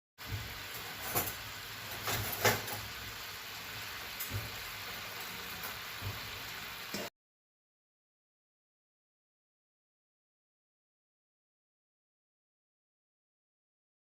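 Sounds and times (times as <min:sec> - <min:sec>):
food sizzling in a frying pan: 0:00.2 - 0:07.1.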